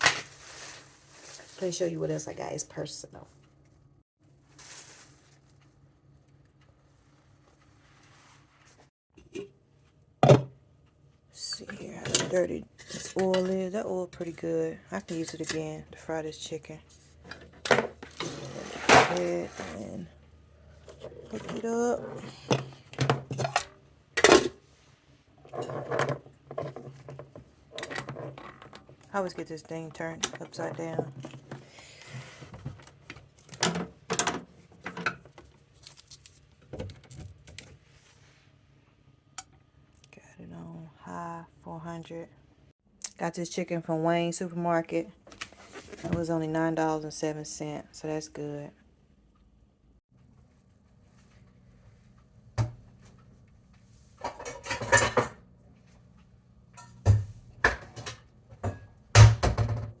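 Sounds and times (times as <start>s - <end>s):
fryer parts clicking and clunking: 32.5s - 37.7s, 54.2s - 55.4s
dishes rattling and clinking: 54.2s - 55.4s.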